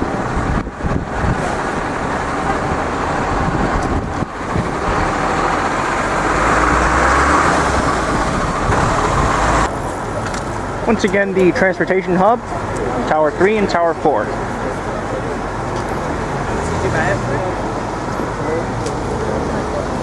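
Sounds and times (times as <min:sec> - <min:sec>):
street traffic: 0:00.0 - 0:20.0
vehicle passing rumble: 0:00.0 - 0:20.0.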